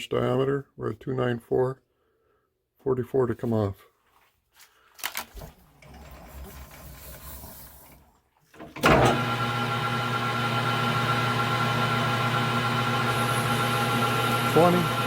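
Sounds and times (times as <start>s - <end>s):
clicks and handling sounds: 4.6s - 5.6s
metal lathe motor humming: 8.6s - 15.0s.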